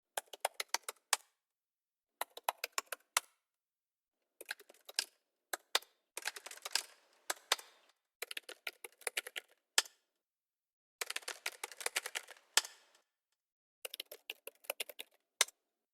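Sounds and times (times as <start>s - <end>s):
keyboard typing clicks: 11.0s - 12.9s, 13.9s - 15.2s.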